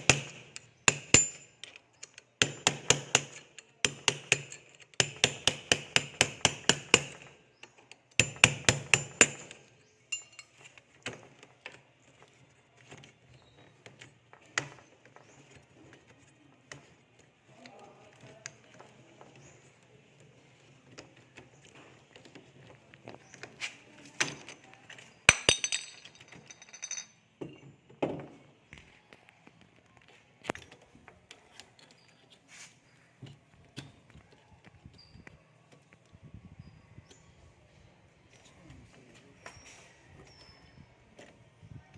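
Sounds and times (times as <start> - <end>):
light knocks and clinks: 9.6 - 12.3, 24.2 - 28.2.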